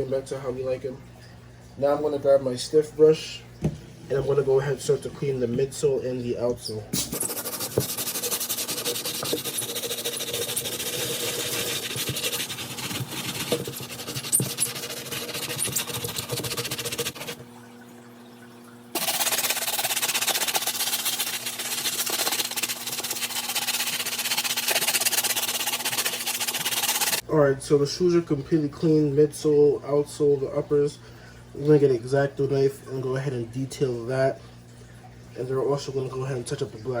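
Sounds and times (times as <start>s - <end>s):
faint steady hum: 0.0s - 26.2s, 27.2s - 37.0s
brush scrubbing a sneaker: 7.2s - 17.4s, 19.0s - 27.2s.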